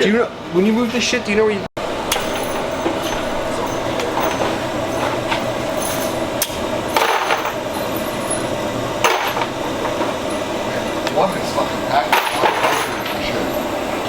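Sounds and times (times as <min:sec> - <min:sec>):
sharp metallic clinks: 0:02.1 - 0:08.5.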